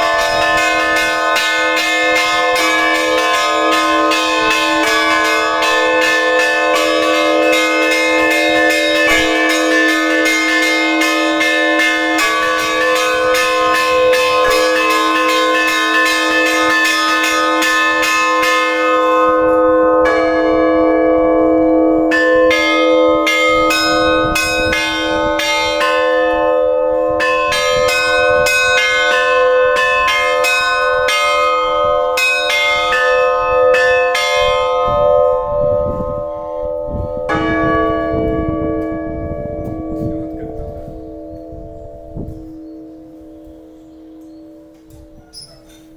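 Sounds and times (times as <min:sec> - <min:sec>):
deep bell ringing: 0:00.0 - 0:45.9.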